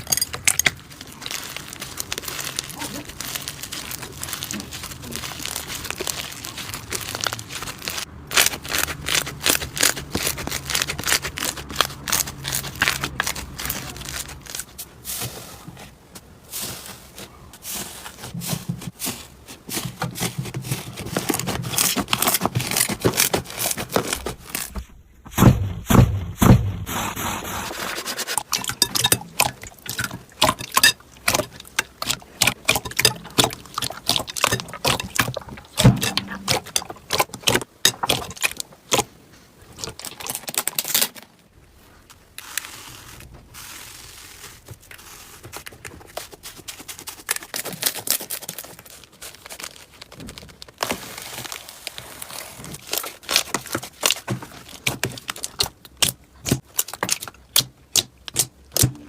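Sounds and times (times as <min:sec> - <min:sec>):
slime crackling and popping: 0:00.6 - 0:14.8, 0:42.4 - 0:59.0.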